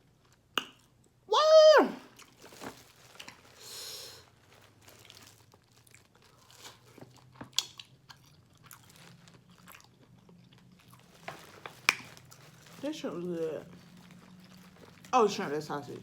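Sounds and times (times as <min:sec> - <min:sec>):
person chewing shrimp: 0:02.1 - 0:12.6, 0:13.7 - 0:15.2.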